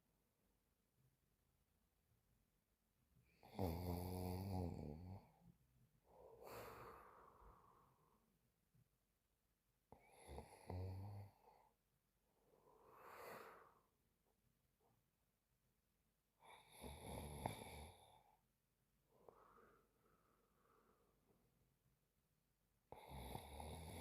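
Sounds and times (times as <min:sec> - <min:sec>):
woman snoring: 0:03.4 - 0:05.3, 0:09.9 - 0:11.6, 0:12.7 - 0:13.9, 0:16.4 - 0:18.3, 0:22.9 - 0:24.0
soft airy breath: 0:06.1 - 0:08.2, 0:12.4 - 0:13.9, 0:19.1 - 0:21.4.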